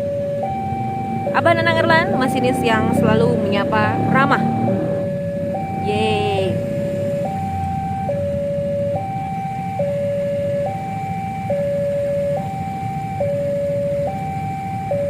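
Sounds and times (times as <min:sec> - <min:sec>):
level crossing two-tone alarm: 0:00.0 - 0:15.0.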